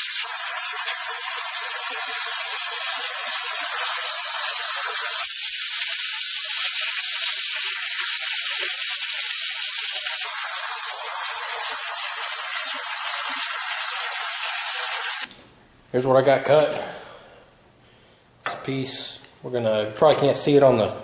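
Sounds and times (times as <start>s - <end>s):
metal-cutting torch hissing: 0.0s - 6.6s, 7.4s - 15.3s.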